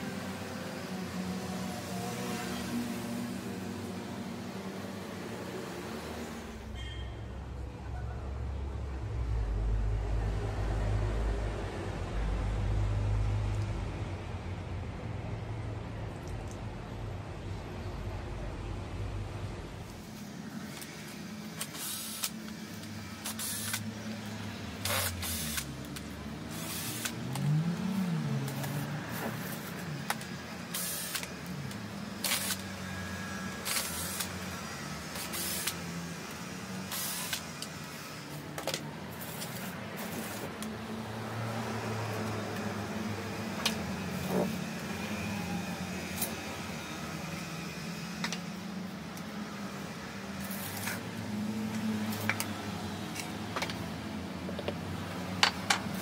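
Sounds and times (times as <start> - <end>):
sharp clicks and knocks: 55.4 - 56.0.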